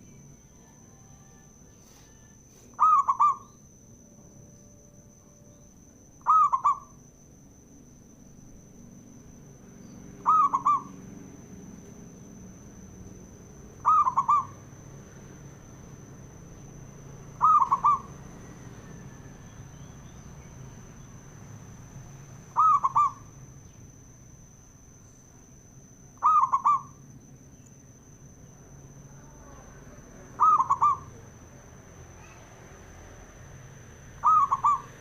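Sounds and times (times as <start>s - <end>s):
dove cooing: 2.7s - 3.5s, 6.2s - 7.0s, 10.2s - 11.0s, 13.8s - 14.8s, 17.3s - 19.4s, 22.5s - 23.3s, 26.2s - 27.0s, 29.3s - 31.3s, 34.2s - 35.0s.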